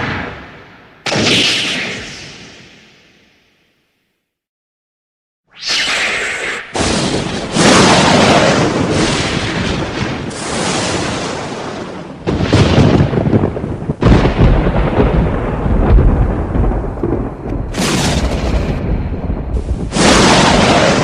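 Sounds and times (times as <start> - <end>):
thunder cracks and rumbling: 6.8 - 21.0.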